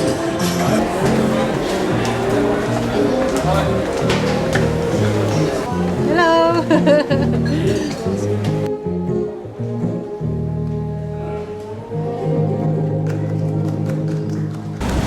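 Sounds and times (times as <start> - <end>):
instrumental music: 0.0 - 14.8.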